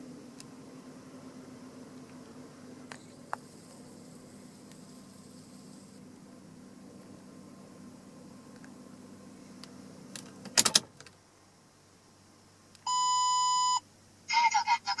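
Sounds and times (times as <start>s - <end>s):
car engine idling: 0.0s - 12.7s
electronic beep: 12.9s - 13.8s.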